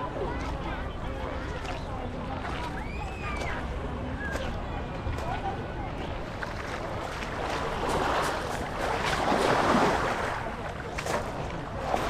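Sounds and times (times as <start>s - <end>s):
small waves washing on shore: 6.2s - 12.0s.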